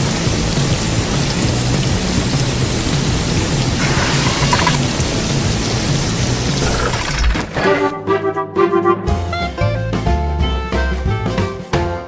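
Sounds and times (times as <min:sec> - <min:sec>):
upbeat instrumental music: 0:07.9 - 0:12.0.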